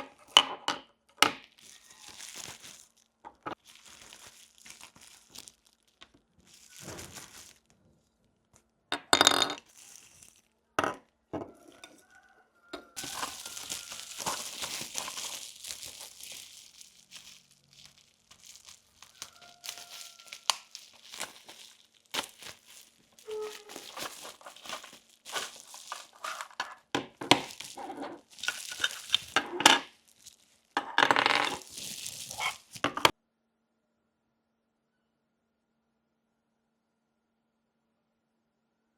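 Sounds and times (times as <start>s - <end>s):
plastic packaging crinkling: 1.2s - 8.6s, 9.3s - 10.6s, 11.5s - 33.2s.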